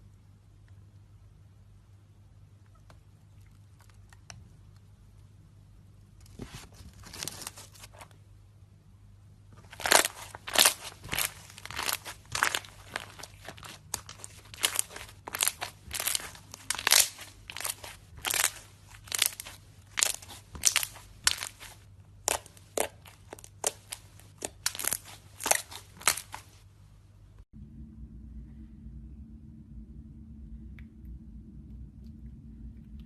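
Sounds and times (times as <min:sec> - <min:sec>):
steady low hum: 0:00.0 - 0:33.0
slime crackling when squeezed: 0:09.6 - 0:26.6.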